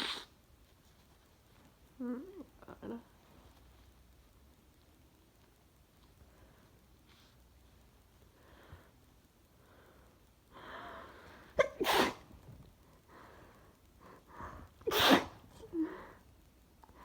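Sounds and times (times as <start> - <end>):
woman sneezing: 11.6 - 12.2, 14.9 - 15.7.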